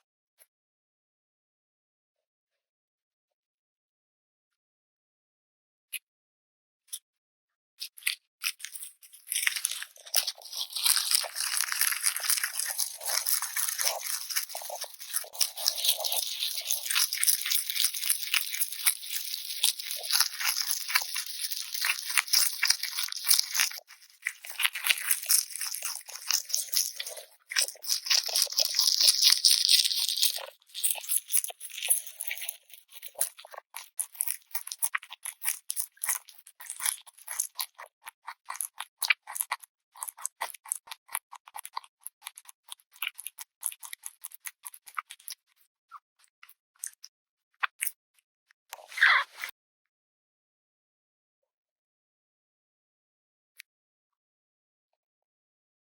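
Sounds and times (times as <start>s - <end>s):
rabbit crunching food: 7.8s - 45.4s.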